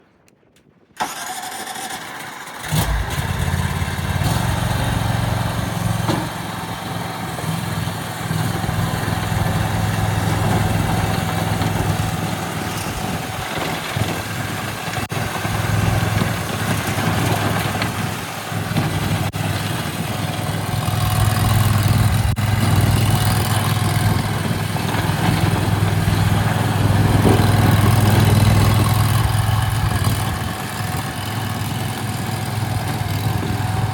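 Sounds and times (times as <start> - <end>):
electric starter cranking: 1.0 - 14.6
gasoline engine running: 1.0 - 33.9.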